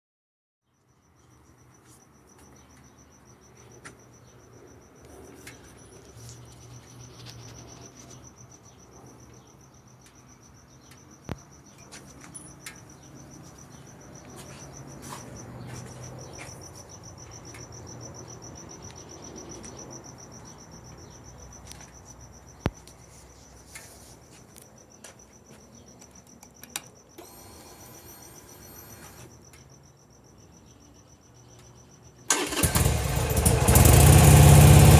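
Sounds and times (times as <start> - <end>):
insects chirping trill: 0.7 - 33.8
sharp clicks: 26.0 - 27.5.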